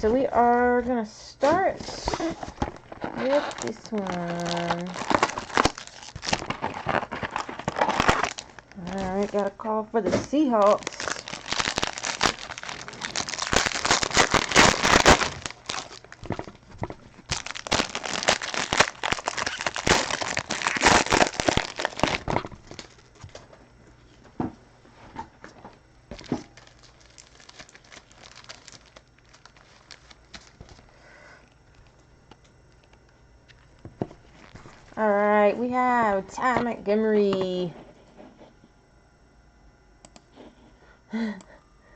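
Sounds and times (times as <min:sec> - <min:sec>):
plastic wrapping crinkling and tearing: 0:01.4 - 0:23.5, 0:26.1 - 0:30.9, 0:33.5 - 0:35.1.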